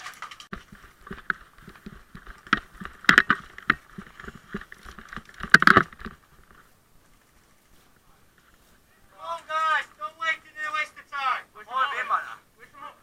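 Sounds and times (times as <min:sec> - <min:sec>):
sharp knocks and clatters: 0:00.0 - 0:06.6
running footsteps on rough ground: 0:00.1 - 0:08.9.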